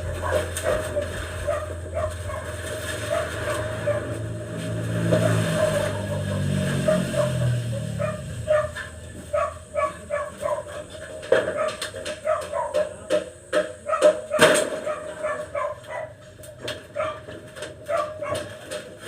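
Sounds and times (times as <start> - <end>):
dog barking and yipping: 0.0 - 4.4, 5.0 - 13.0, 13.8 - 16.2, 16.9 - 18.7.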